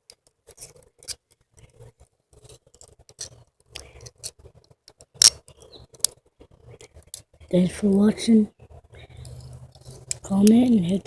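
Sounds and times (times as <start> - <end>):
toy handcuffs clicking and rattling: 9.2 - 11.0.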